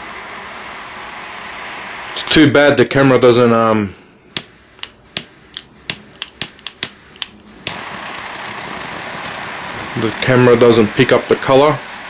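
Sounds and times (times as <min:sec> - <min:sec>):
jet flames hissing: 0:00.0 - 0:12.0
lighter ignition clicking: 0:04.8 - 0:07.8.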